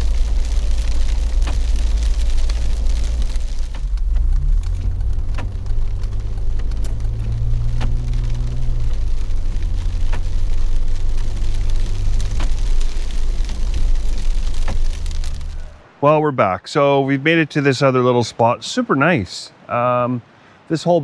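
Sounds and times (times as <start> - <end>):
sharp clicks and ticks: 0.0 - 15.8
vehicle engine drone: 0.0 - 15.8
tyre and road noise: 0.0 - 16.0.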